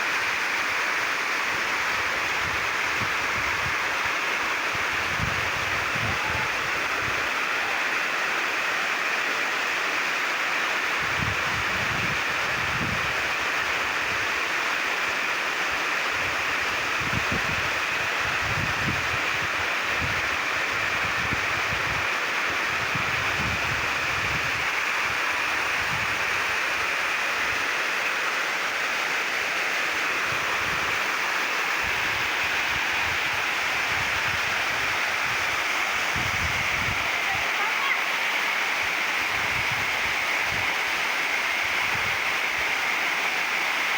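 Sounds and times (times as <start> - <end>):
waterfall rushing: 0.0 - 43.9
wind buffeting microphone: 22.8 - 26.6, 31.8 - 37.4.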